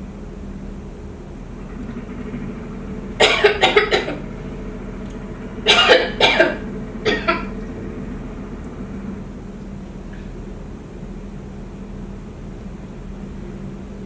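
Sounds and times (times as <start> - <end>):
steady low hum: 0.0 - 14.0
woman coughing: 3.2 - 4.2, 5.7 - 7.5.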